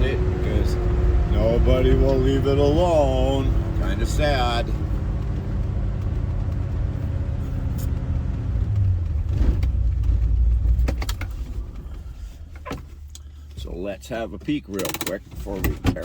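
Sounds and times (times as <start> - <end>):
car engine and road noise: 0.0 - 16.0.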